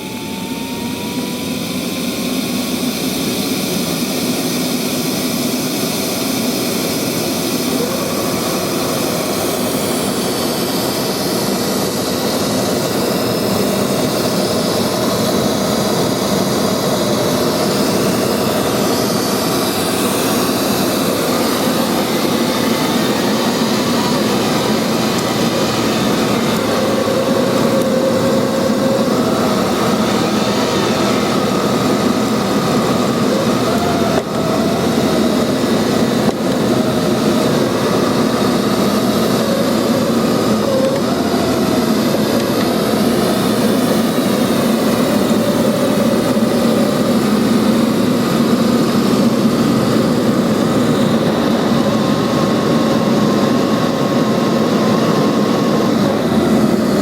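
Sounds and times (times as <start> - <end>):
robot vacuum motor whine: 0.0 - 57.0.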